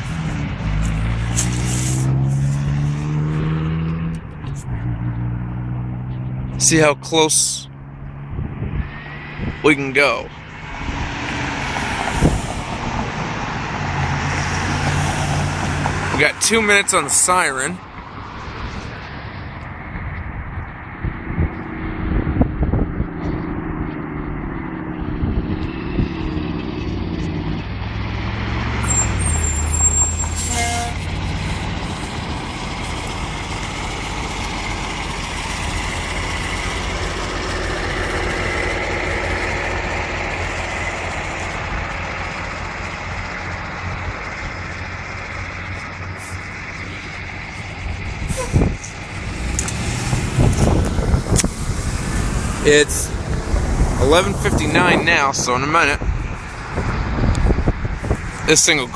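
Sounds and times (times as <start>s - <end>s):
road noise: 0.0s - 58.9s
vehicle engine: 0.0s - 58.9s.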